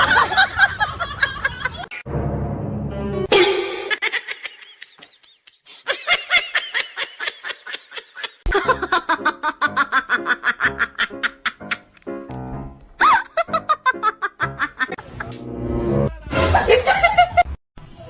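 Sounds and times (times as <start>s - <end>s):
people laughing: 0.0s - 1.9s, 3.9s - 12.0s, 13.0s - 15.4s, 16.1s - 17.6s.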